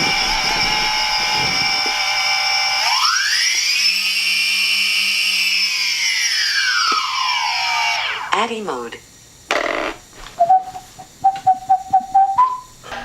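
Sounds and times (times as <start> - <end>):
drone motors whining: 0.0 - 8.4.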